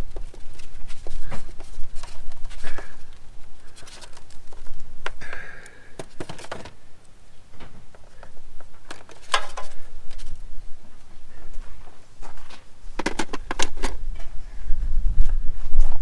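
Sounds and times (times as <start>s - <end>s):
clicks and knocks of tools: 7.6s - 10.3s.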